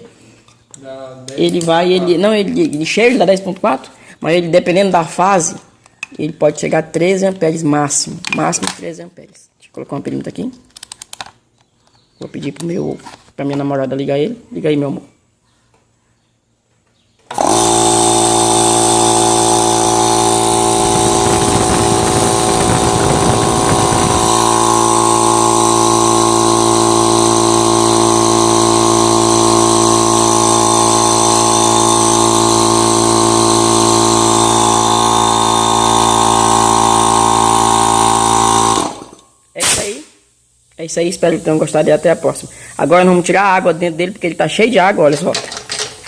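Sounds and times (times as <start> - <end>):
rough rattle: 17.3 - 39.2
air compressor humming: 17.3 - 40.0.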